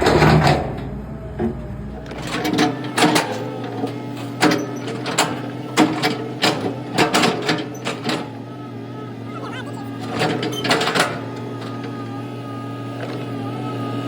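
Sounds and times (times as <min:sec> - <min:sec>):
sharp knocks and clanks: 0:00.0 - 0:03.4
engine running: 0:00.0 - 0:14.0.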